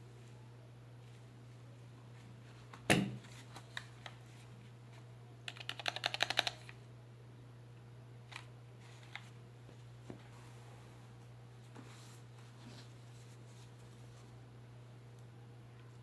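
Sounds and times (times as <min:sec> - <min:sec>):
mechanical keyboard keys clicking: 0:05.5 - 0:06.8.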